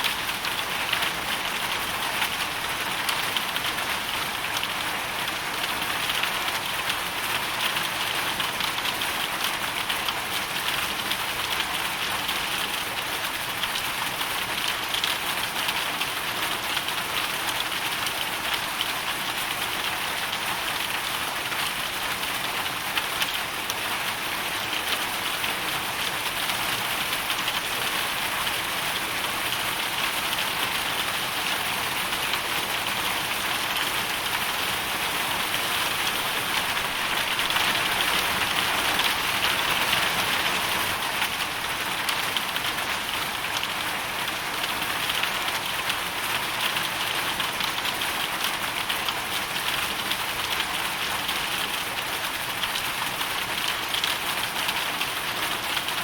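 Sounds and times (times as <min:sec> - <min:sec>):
hail and rain pelting: 0:00.0 - 0:56.0.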